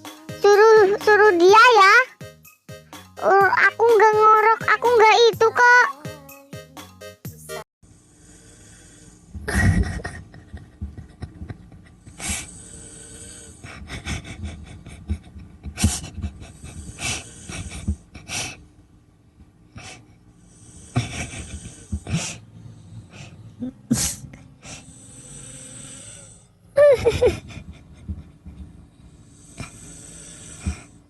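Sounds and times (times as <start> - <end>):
person snoring: 8.0 - 9.9, 12.0 - 14.8, 15.9 - 18.6, 19.8 - 26.5, 28.9 - 31.0.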